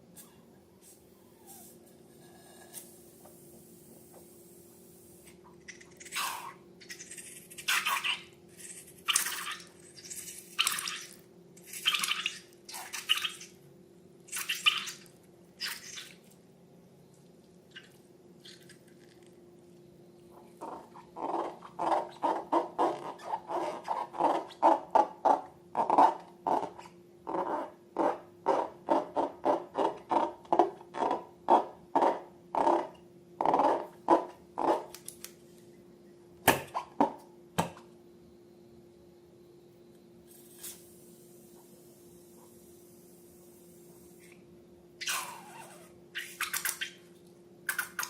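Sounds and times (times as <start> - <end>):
wet squelches of slime: 5.6 - 13.6, 14.3 - 16.4, 17.2 - 19.4, 46.2 - 48.0.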